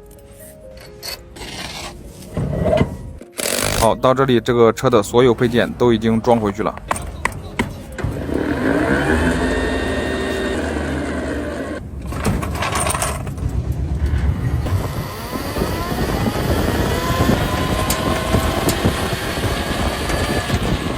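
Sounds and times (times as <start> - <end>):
electric motor whine: 8.0 - 11.8, 14.6 - 20.9.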